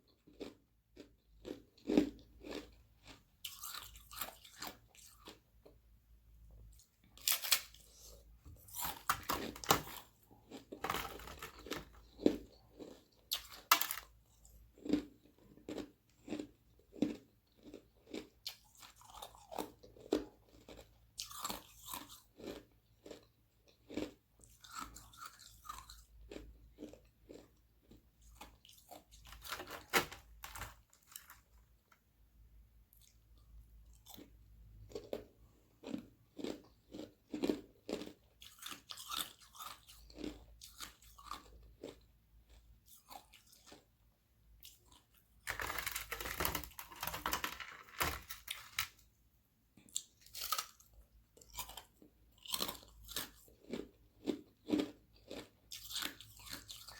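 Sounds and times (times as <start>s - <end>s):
crunching ice: 7.2s - 15.1s, 29.1s - 31.6s, 45.4s - 49.0s.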